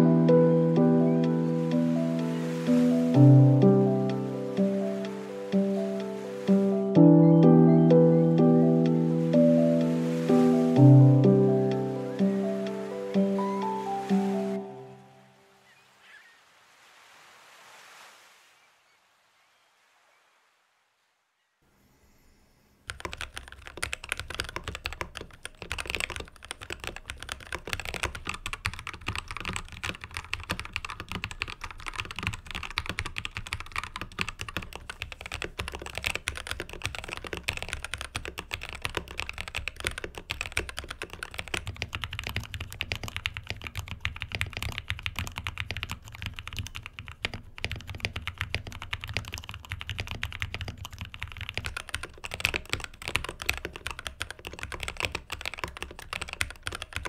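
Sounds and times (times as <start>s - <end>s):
fast typing on mechanical keyboard: 22.8s - 57.0s.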